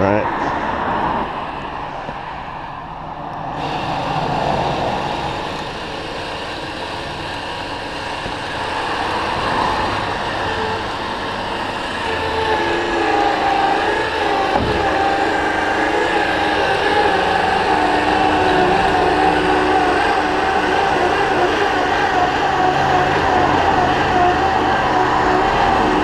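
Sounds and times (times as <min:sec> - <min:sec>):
electric winch motor whining: 0:00.4 - 0:26.0
heavy thump: 0:14.6 - 0:15.0.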